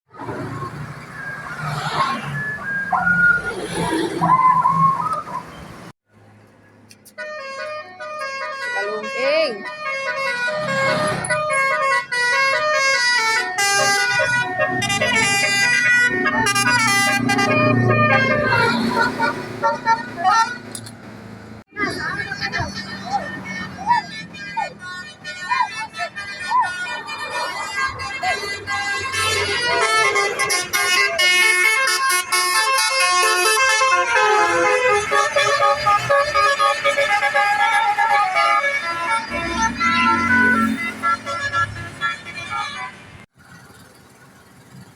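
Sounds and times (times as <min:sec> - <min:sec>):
musical air horn tune: 0:07.1 - 0:20.1, 0:26.2 - 0:42.5.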